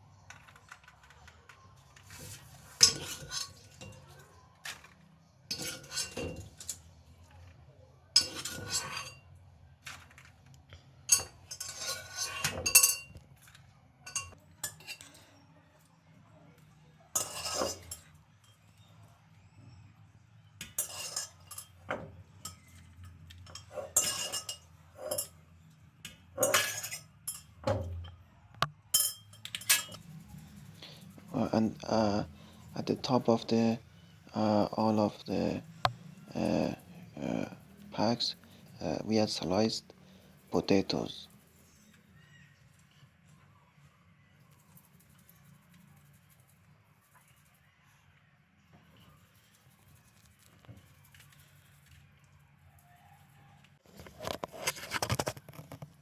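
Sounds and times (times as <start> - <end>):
spoon and dishes clinking: 1.9 - 7.0, 8.2 - 9.3, 11.0 - 15.4, 16.6 - 19.0, 20.5 - 30.2.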